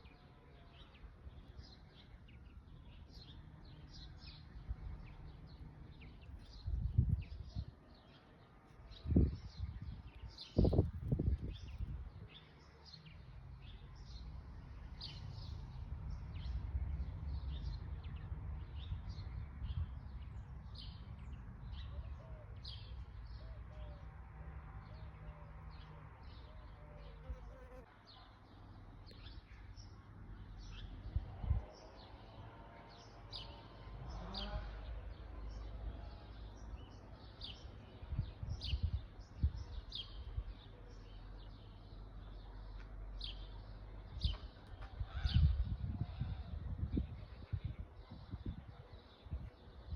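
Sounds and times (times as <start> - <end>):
small birds chirping: 0.0 - 24.1.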